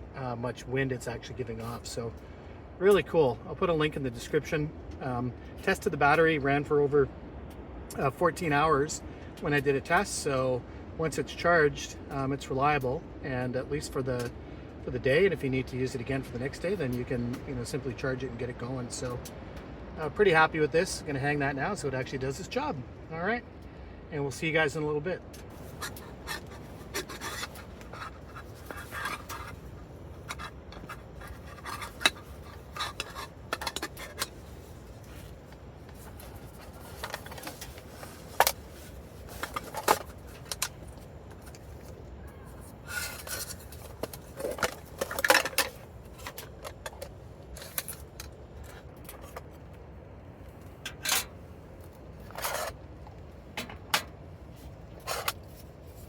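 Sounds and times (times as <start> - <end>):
low background noise: 0.0 - 56.0
objects clicking and scraping: 25.3 - 56.0.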